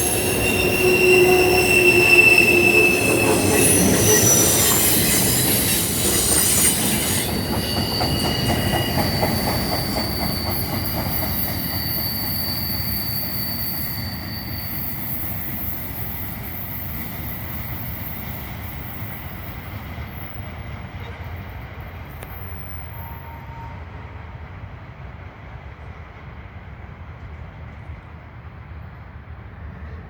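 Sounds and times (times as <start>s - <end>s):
high wheel squeal: 0.0s - 20.8s
train rolling along track: 0.0s - 30.0s.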